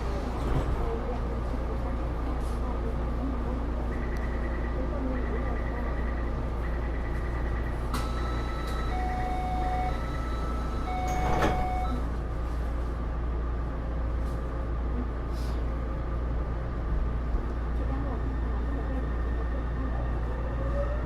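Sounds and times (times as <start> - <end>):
train interior rumble: 0.0 - 21.0
short electronic beeps: 6.7 - 12.0.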